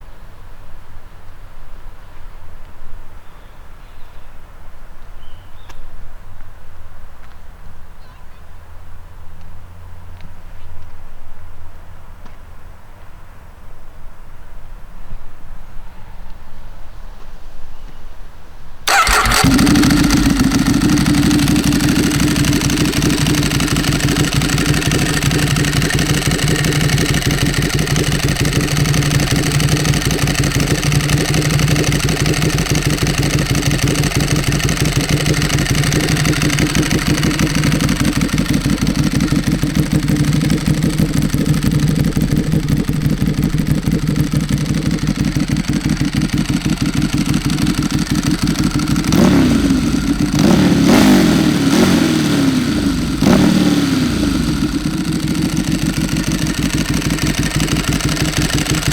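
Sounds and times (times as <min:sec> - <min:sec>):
motorcycle engine idling: 0:18.9 - 0:58.9.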